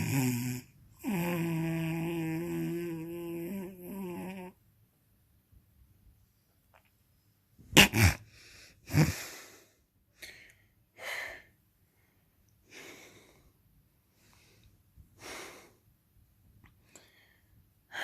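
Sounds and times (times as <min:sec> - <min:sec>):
person snoring and snorting: 0:00.0 - 0:04.6, 0:07.8 - 0:09.5.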